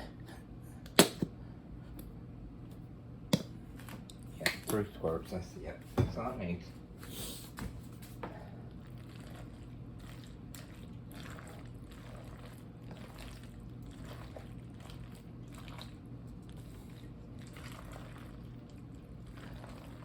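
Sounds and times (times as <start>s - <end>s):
steady low hum: 0.0s - 20.0s
spoon squishing macaroni: 8.7s - 20.0s.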